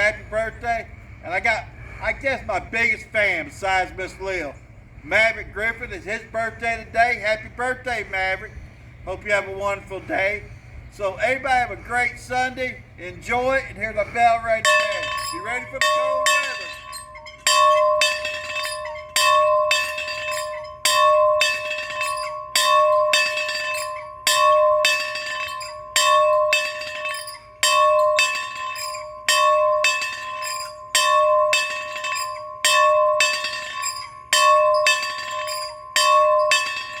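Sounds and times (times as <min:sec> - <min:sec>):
large bell ringing: 0:13.3 - 0:37.0.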